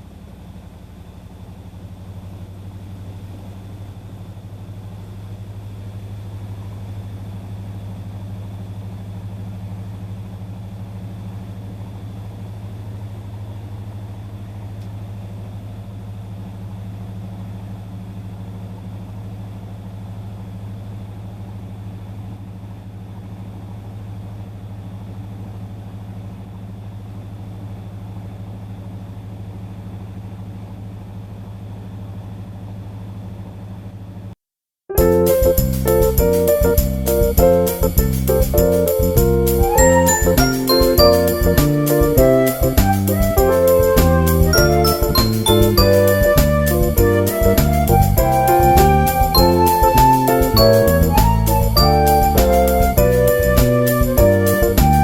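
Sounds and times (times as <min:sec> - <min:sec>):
washing machine motor hum: 0:35.0 - 0:40.4.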